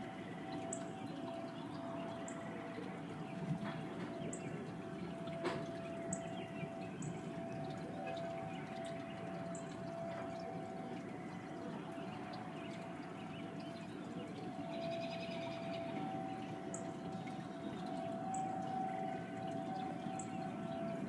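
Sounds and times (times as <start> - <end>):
tornado warning siren two-tone wail: 0.0 - 21.0.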